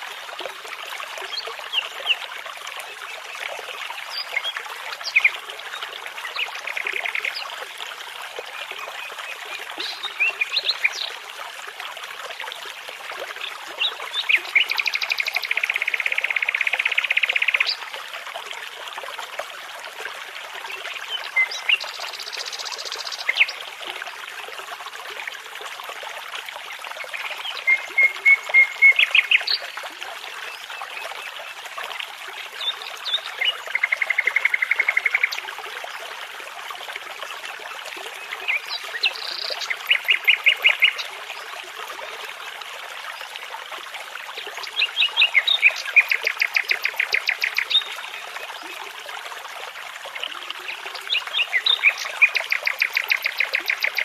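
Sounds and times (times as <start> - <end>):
brook babbling: 0.0 - 54.0
songbird song: 1.2 - 7.6, 8.5 - 11.2, 13.4 - 17.9, 20.6 - 23.8, 26.6 - 31.8, 32.4 - 36.0, 37.3 - 41.5, 44.3 - 49.0, 50.2 - 54.0.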